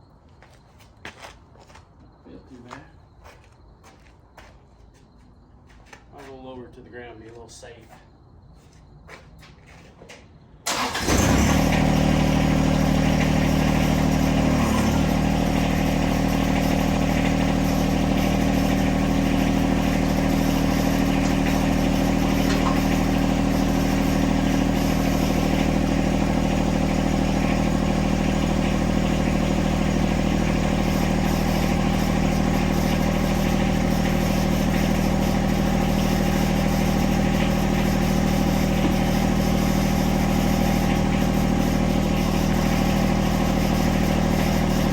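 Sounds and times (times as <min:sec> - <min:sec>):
tractor diesel engine running: 0:10.6 - 0:44.9.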